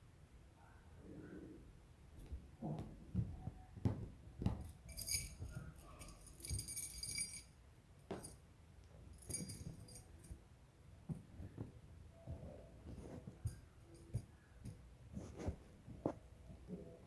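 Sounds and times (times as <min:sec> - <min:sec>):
paws thumping on plush toy: 0:02.2 - 0:07.2
metallic jingling: 0:04.6 - 0:08.4, 0:09.1 - 0:10.4.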